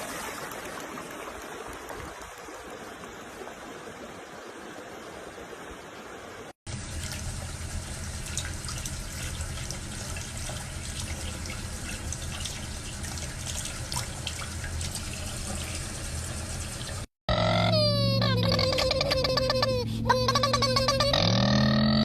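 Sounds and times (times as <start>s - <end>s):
running water splashing: 0.0s - 17.1s.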